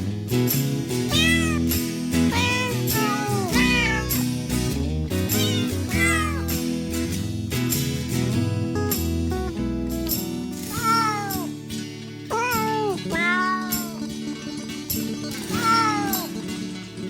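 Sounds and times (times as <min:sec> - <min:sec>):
cat meowing: 0:01.1 - 0:01.7, 0:02.3 - 0:04.4, 0:05.3 - 0:06.5, 0:10.7 - 0:11.6, 0:12.3 - 0:14.1, 0:15.5 - 0:16.4.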